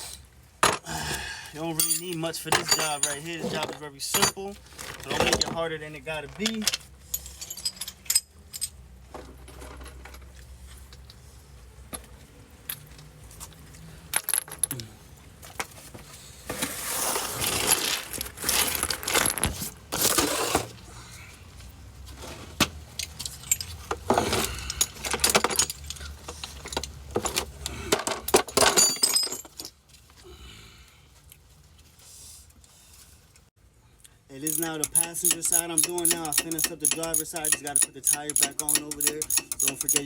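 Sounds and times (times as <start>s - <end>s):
tools rattling: 1.6s - 5.6s, 6.2s - 10.3s, 22.9s - 29.8s, 34.4s - 40.0s
metal hand tools clinking: 1.7s - 4.6s, 34.4s - 40.0s.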